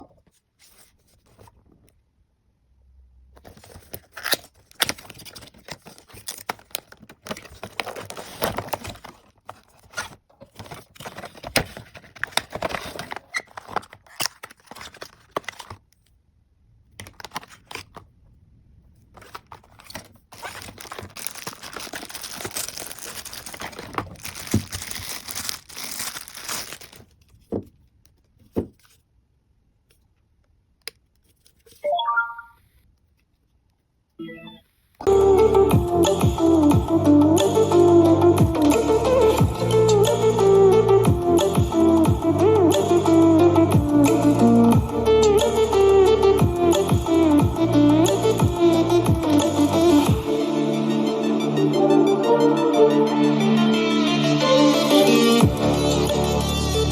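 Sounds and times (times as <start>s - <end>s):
packaging tearing and crinkling: 3.4s - 16.1s, 17.0s - 18.1s, 19.0s - 27.4s.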